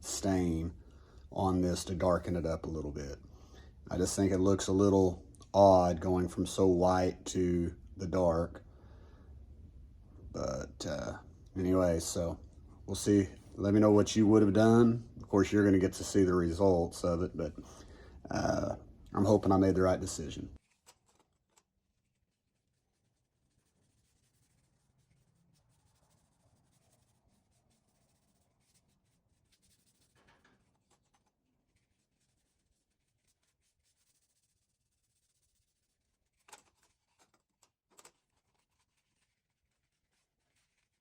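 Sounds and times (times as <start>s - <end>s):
faint handling noise: 19.0s - 22.2s, 29.5s - 32.3s, 35.3s - 41.0s.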